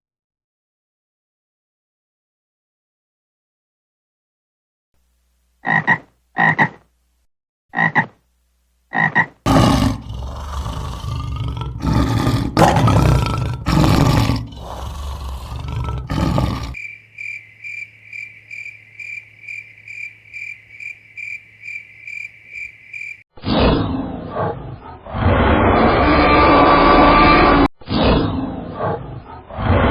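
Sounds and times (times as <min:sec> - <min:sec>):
frog-like croaks: 0:05.6 - 0:06.9, 0:07.7 - 0:08.2, 0:08.9 - 0:23.2
large animal roaring: 0:09.5 - 0:16.8
high even chirp: 0:16.8 - 0:23.2.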